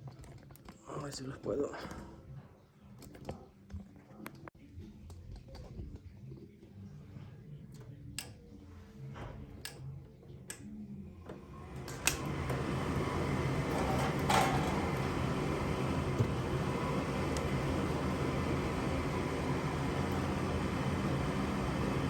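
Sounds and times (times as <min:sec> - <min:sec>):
furnace motor running: 0:08.2 - 0:22.0.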